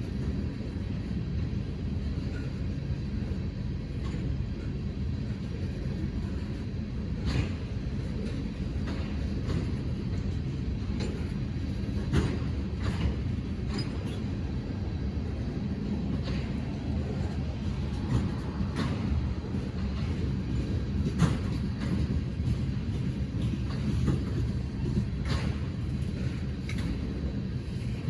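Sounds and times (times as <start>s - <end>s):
train rumbling past: 0.0s - 28.0s.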